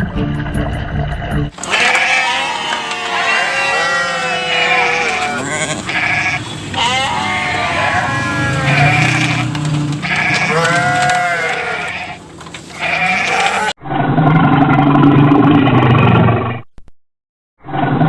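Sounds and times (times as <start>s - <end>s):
steady low rumbling: 0.0s - 1.6s, 4.0s - 13.2s
sheep bleating: 1.6s - 13.8s.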